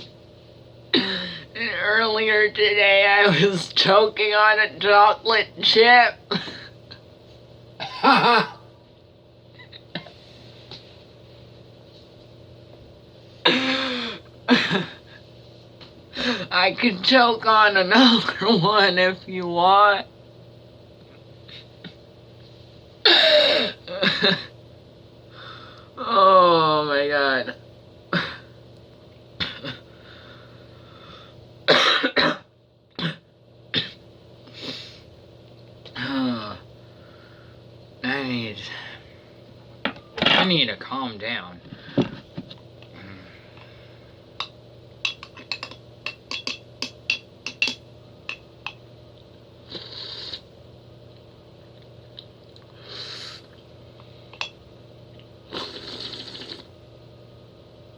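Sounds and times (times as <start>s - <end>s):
woman coughing: 6.3s - 6.7s, 7.8s - 8.7s, 13.4s - 13.9s, 14.5s - 15.0s, 23.0s - 24.5s, 28.1s - 28.5s, 29.4s - 29.8s, 31.7s - 34.0s
man clearing throat: 7.8s - 8.7s, 13.5s - 15.0s, 23.0s - 24.5s, 28.1s - 28.5s, 29.4s - 29.8s, 31.7s - 34.0s.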